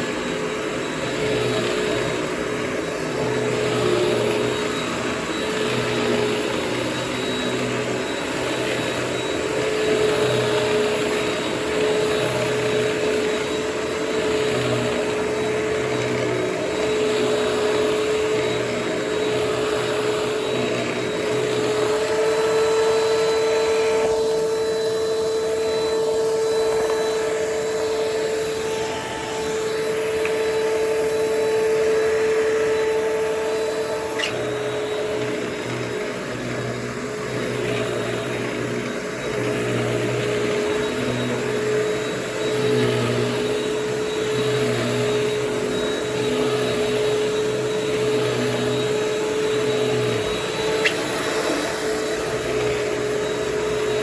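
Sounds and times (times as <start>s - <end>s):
vacuum cleaner running: 0.0s - 54.0s.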